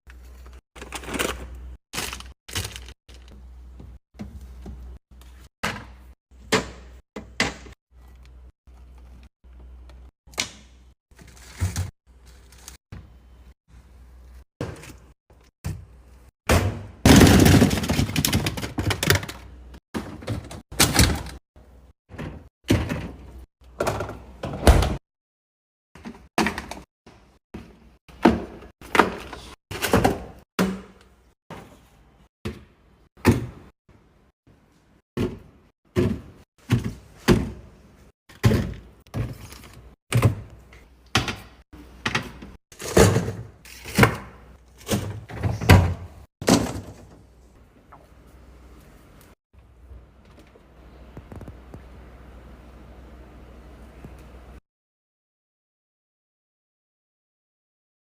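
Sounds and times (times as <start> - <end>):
containers clacking and thudding: 17.1 - 21.4.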